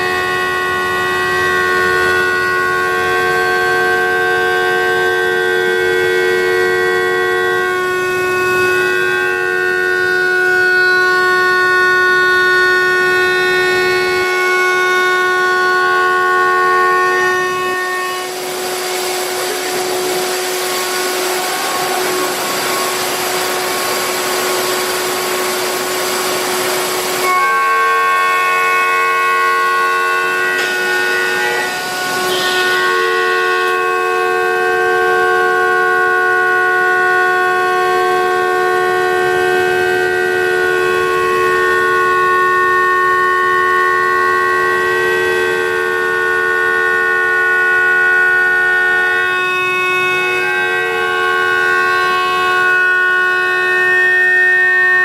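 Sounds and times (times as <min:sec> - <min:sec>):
cnc router motor whining: 0:00.0 - 0:55.0
loud hiss: 0:18.2 - 0:27.3.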